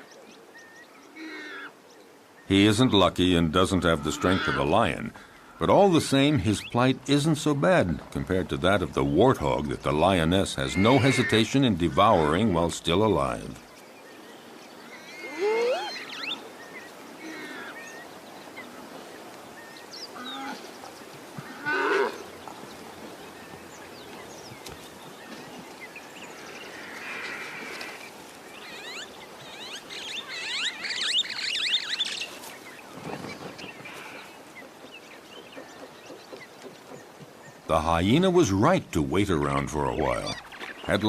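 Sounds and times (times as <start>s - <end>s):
warthog squealing: 3.8s - 4.8s.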